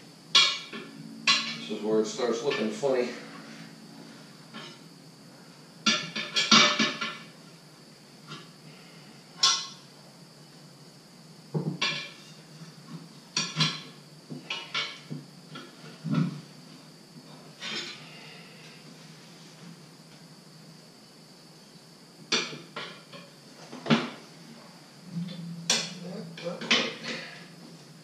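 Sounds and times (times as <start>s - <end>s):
tire spoons clanking and scraping: 0.3s - 3.8s, 4.5s - 4.9s, 17.3s - 18.2s, 24.7s - 27.8s.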